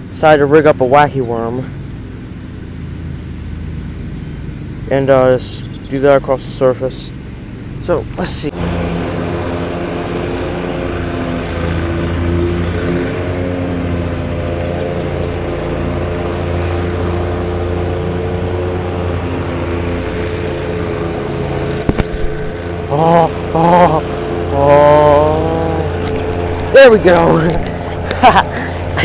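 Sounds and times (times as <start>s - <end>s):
engine humming: 0.0s - 29.0s
short wavering pitched calls: 5.3s - 6.3s, 7.1s - 8.4s
sharp click: 21.8s - 22.4s.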